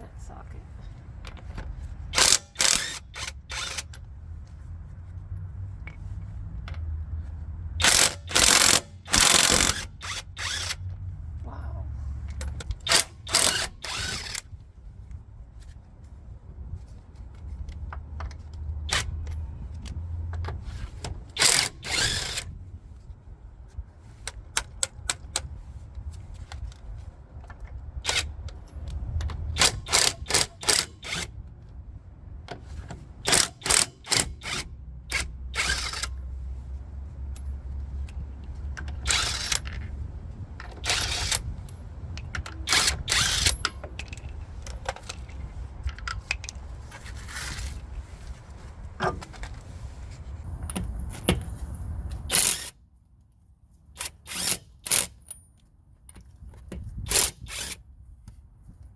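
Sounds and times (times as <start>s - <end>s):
low steady rumble: 0.0s - 30.2s
impact wrench hammering: 2.2s - 3.8s, 7.8s - 10.5s.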